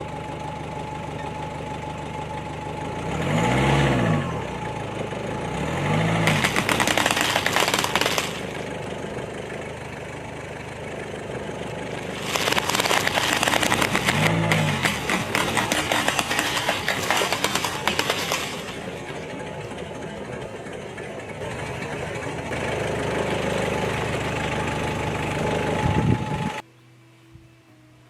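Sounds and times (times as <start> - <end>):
car engine revving: 3.0 - 8.9, 12.0 - 26.5
objects crushed under tyre: 6.1 - 8.8, 12.1 - 19.5.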